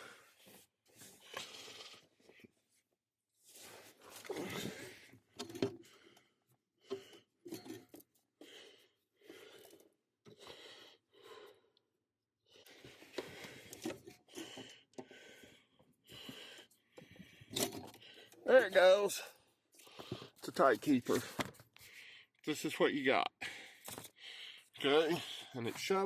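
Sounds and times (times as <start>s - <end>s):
person breathing hard: 0.0s - 2.4s, 3.6s - 7.4s, 8.4s - 11.8s, 12.5s - 18.4s, 19.2s - 20.4s, 21.1s - 22.4s, 23.4s - 25.6s.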